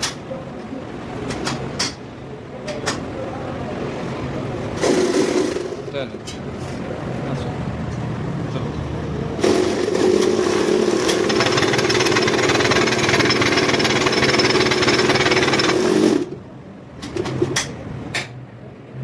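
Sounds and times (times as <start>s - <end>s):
power tool running: 9.4s - 16.4s.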